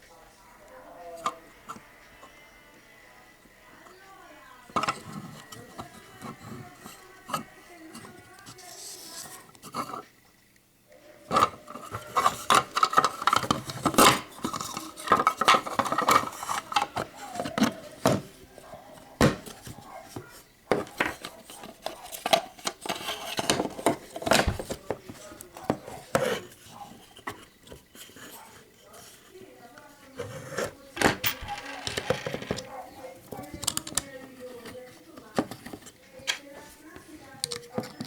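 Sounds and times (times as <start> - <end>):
parts scraping: 11.4 - 18.3, 19.2 - 28.4, 30.2 - 34.8
small plastic parts clicking and clattering: 11.4 - 18.3, 30.6 - 32.7.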